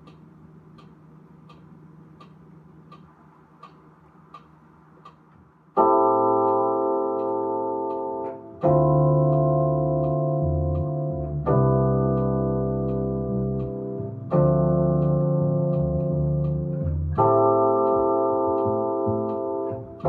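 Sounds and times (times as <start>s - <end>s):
soft even ticks: 0.0s - 5.5s, 6.4s - 20.0s
sustained keyboard chord: 5.7s - 20.0s.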